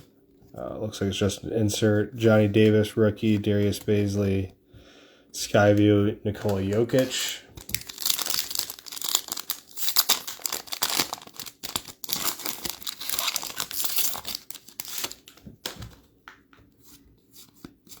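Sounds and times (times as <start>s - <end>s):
card pack wrapper tearing: 6.4s - 15.4s.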